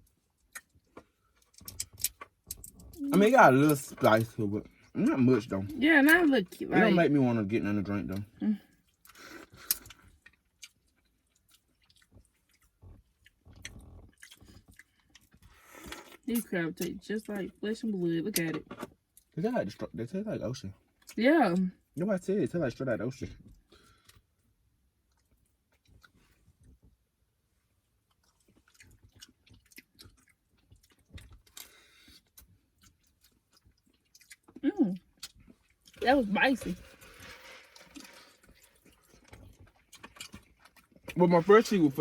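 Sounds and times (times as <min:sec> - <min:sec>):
person chewing: 0:00.2 - 0:05.0, 0:08.1 - 0:16.3, 0:25.0 - 0:26.4, 0:28.0 - 0:36.0, 0:36.8 - 0:41.7.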